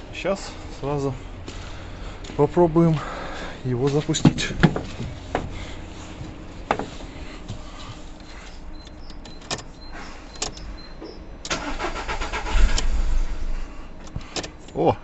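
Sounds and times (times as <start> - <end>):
car engine firing: 0.9 - 7.2, 8.3 - 15.0
starter cranking car engine: 8.1 - 15.0
sharp clicks: 8.8 - 9.7, 10.3 - 10.7.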